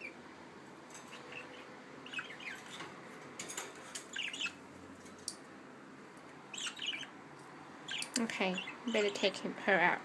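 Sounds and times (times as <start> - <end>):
budgerigars chirping and squawking: 0.9 - 3.0, 3.6 - 4.7, 6.5 - 7.2, 7.9 - 9.3.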